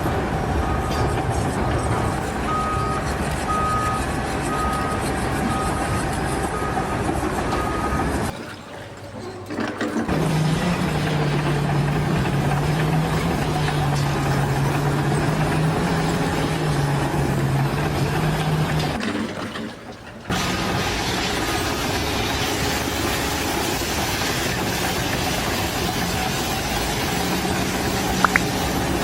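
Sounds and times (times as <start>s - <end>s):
reversing alarm beeping: 0.0s - 8.3s, 28.2s - 28.6s
heavy machine engine running: 0.0s - 29.0s.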